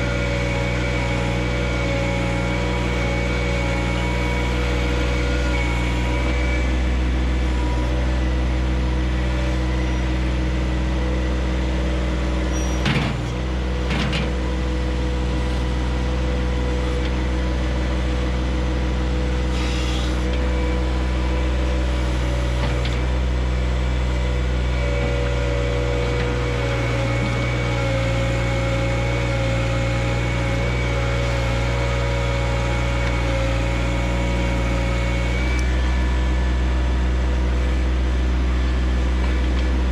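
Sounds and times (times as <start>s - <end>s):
tractor diesel engine running: 0.0s - 39.9s.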